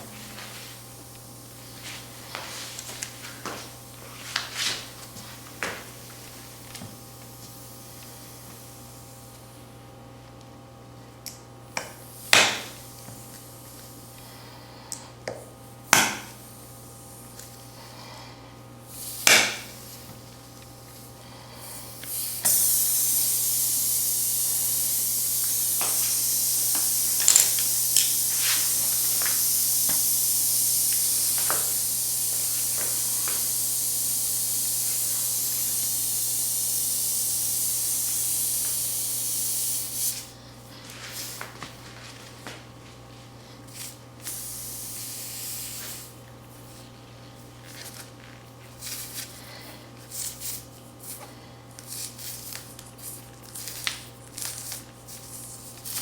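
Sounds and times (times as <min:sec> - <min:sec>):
compressed air hissing: 0:16.1 - 0:20.1, 0:21.3 - 0:40.4, 0:43.7 - 0:46.8.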